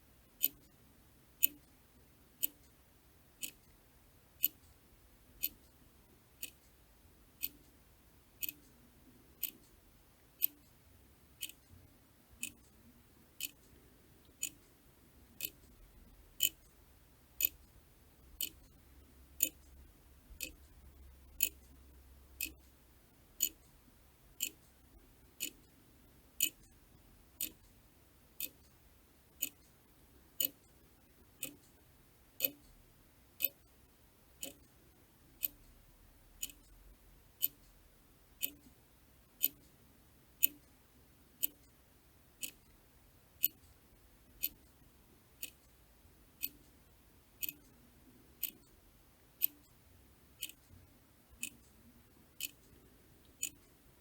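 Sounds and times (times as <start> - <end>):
clock ticking: 0.4 - 0.7, 1.4 - 1.7, 2.4 - 2.7, 3.4 - 3.7, 4.4 - 4.8, 5.4 - 5.7, 6.4 - 6.7, 7.4 - 7.7, 8.4 - 8.8, 9.4 - 9.8, 10.4 - 10.7, 11.4 - 11.8, 12.4 - 12.7, 13.4 - 14.7, 15.3 - 16.8, 17.4 - 17.7, 18.4 - 18.8, 19.4 - 20.8, 21.4 - 21.8, 22.4 - 22.7, 23.4 - 23.7, 24.3 - 24.8, 25.4 - 25.7, 26.4 - 26.8, 27.4 - 27.8, 28.4 - 28.7, 29.4 - 29.7, 30.4 - 30.7, 31.3 - 31.8, 32.4 - 32.8, 33.4 - 33.7, 34.4 - 34.8, 35.4 - 35.8, 36.4 - 36.8, 37.4 - 37.8, 38.4 - 38.8, 39.4 - 39.7, 40.4 - 40.7, 41.4 - 41.8, 42.4 - 42.8, 43.4 - 43.8, 44.4 - 44.8, 45.4 - 45.8, 46.4 - 46.8, 47.4 - 47.8, 48.4 - 48.8, 49.4 - 49.8, 50.4 - 53.8.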